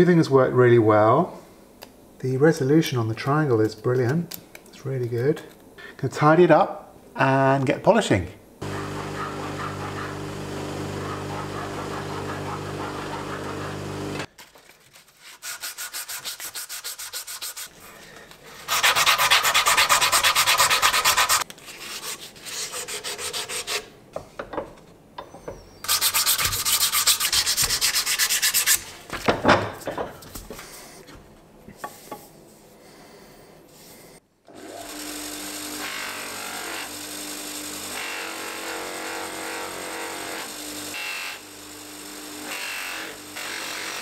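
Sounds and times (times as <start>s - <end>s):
motor humming: 8.6s - 14.3s
hand sanding metal: 14.9s - 17.8s, 18.6s - 23.9s, 25.9s - 28.9s.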